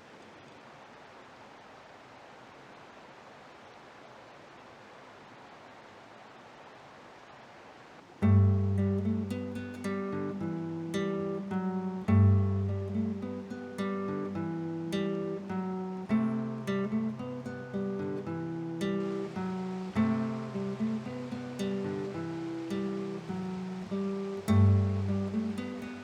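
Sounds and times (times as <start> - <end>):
acoustic guitar music: 8.2 - 26.0.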